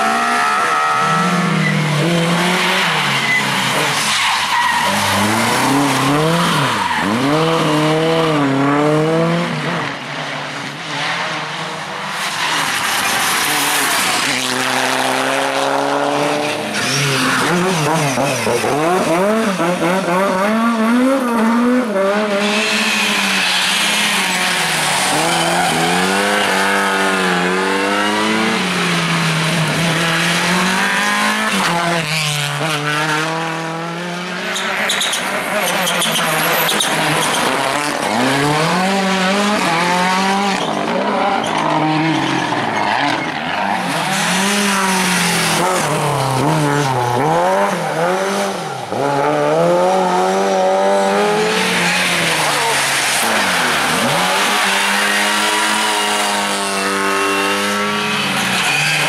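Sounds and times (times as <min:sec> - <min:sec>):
rally car engine revving: 0:00.0 - 0:59.0
tyre squeal: 0:00.1 - 0:07.5, 0:34.5 - 0:38.2, 0:58.2 - 0:59.0.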